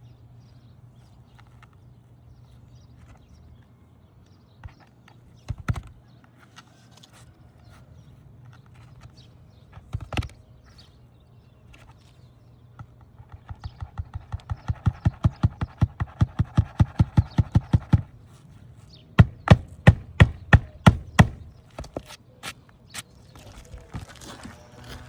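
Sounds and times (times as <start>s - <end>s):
hammer striking roofing nails: 13.5s - 18.1s, 19.2s - 22.1s.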